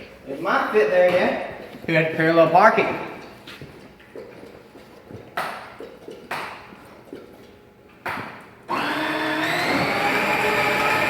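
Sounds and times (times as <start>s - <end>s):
electric toy motor whine: 8.7s - 11.0s.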